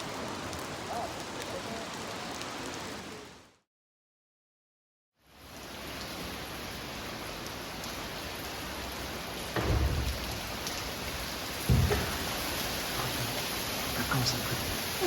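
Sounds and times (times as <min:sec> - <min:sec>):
heavy rain: 0:00.0 - 0:03.6, 0:05.2 - 0:15.0
loud low thump: 0:09.6 - 0:10.3, 0:11.6 - 0:12.3.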